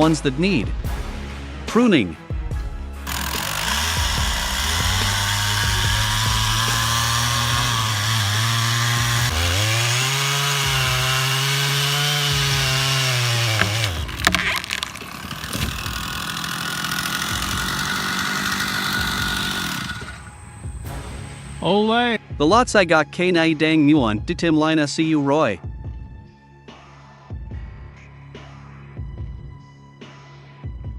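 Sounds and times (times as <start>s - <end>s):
chainsaw cutting wood: 3.0s - 21.7s
quiet steady engine: 3.1s - 21.6s
sharp knocks: 3.2s - 16.4s.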